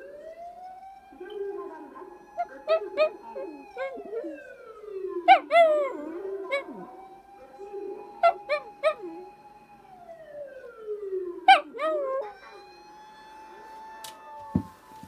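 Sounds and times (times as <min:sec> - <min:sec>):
fire truck siren wailing: 0:00.0 - 0:15.0
dog yelping: 0:05.3 - 0:06.8, 0:11.5 - 0:12.6.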